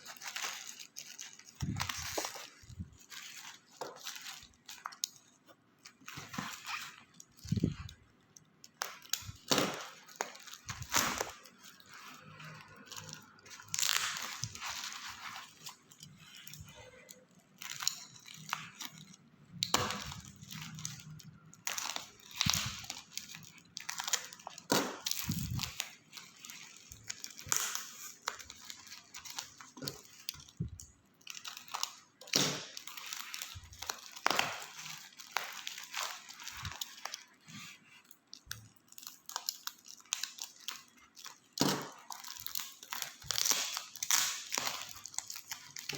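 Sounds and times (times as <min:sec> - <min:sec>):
packaging tearing: 0:00.0 - 0:08.0, 0:08.6 - 0:45.9
packaging crinkling and rustling: 0:00.0 - 0:45.9.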